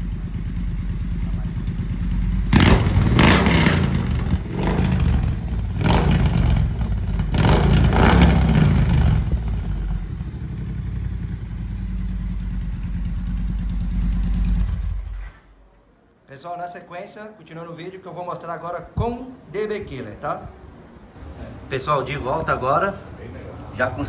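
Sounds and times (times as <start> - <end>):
motorcycle engine revving and idling: 0.0 - 15.7.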